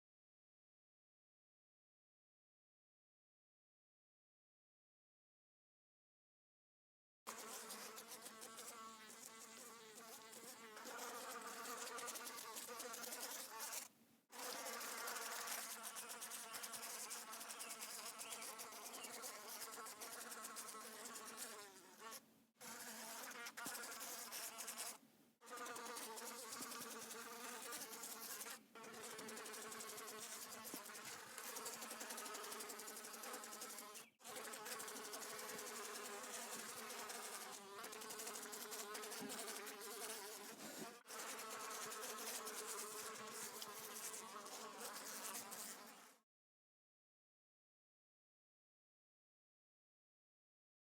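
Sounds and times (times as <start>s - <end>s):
house flies buzzing: 7.3s - 46.0s.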